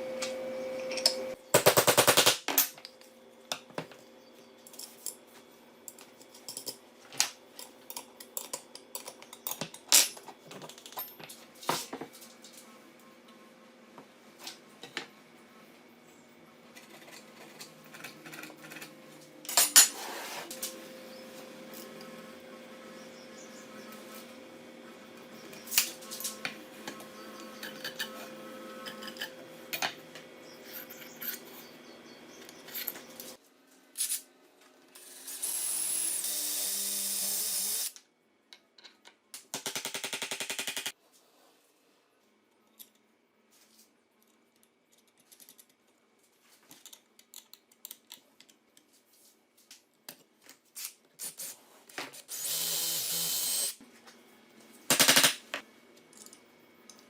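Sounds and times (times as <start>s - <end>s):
steady hum with clicks: 0.0s - 19.9s, 20.5s - 35.0s, 53.8s - 57.0s
power drill bursts: 52.3s - 53.8s.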